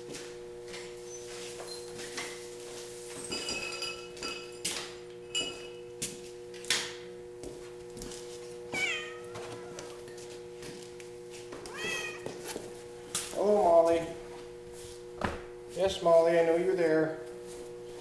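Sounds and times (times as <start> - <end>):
electrical hum: 0.0 - 18.0
cat meowing: 8.7 - 10.0, 11.6 - 12.3.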